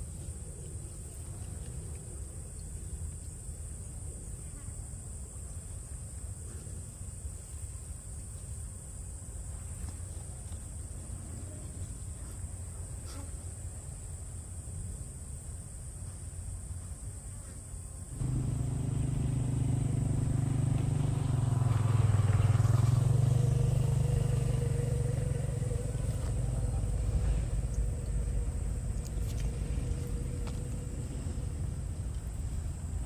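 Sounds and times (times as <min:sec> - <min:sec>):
small engine passing by: 0:18.1 - 0:33.0.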